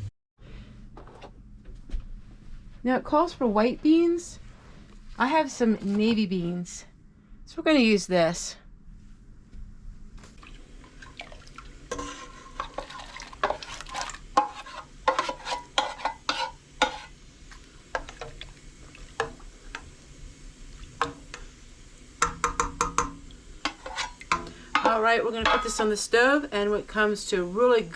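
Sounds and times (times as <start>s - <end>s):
metal spoon scraping a pot: 11.9s - 17.2s, 23.6s - 25.8s.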